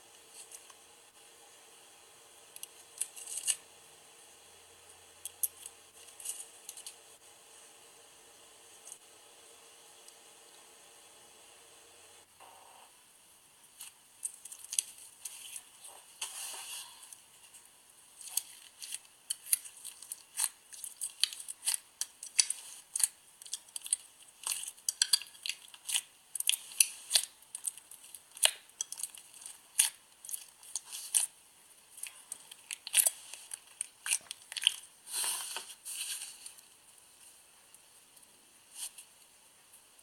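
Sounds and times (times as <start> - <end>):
squelchy slime crackles: 18.2 - 31.3, 31.9 - 36.6
slime kneaded with clicks and pops: 18.2 - 34.9.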